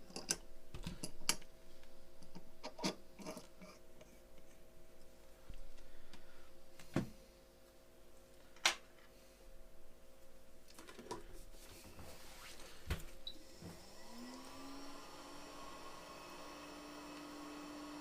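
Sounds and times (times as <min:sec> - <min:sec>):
electric bench device humming: 0:12.9 - 0:18.0.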